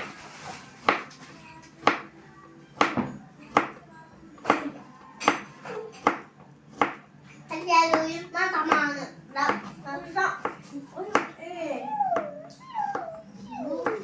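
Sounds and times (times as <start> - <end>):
faint background music: 0.0 - 14.0
knife chopping on cutting board: 0.8 - 1.2, 1.8 - 2.1, 2.8 - 3.8, 4.4 - 7.0, 7.9 - 9.8, 10.4 - 11.4.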